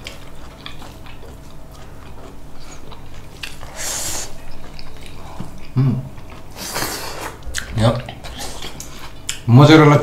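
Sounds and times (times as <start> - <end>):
chewing and biting food: 0.0 - 3.8, 4.4 - 6.6.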